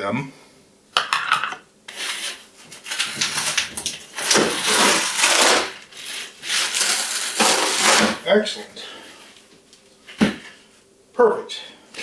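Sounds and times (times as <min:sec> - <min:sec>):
plastic packing rustling and scraping: 0:01.9 - 0:08.3.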